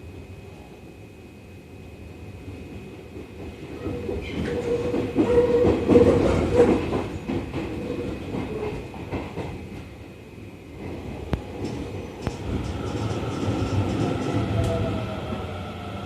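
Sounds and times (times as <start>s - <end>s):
steady train hum: 0.0s - 16.0s
train wheels clattering on rails: 2.9s - 10.0s, 10.7s - 15.6s.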